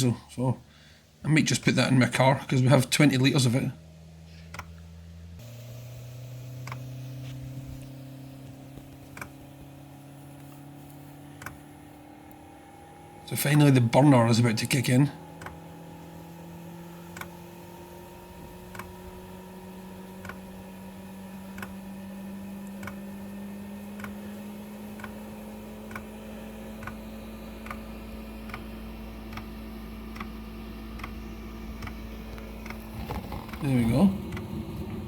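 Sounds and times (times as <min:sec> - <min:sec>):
fan hum: 0:00.0 - 0:35.0
fuel pump ticking: 0:06.2 - 0:11.9, 0:13.3 - 0:16.4, 0:18.3 - 0:19.3, 0:22.7 - 0:23.1, 0:24.0 - 0:35.0
burner low rumble: 0:31.3 - 0:35.0.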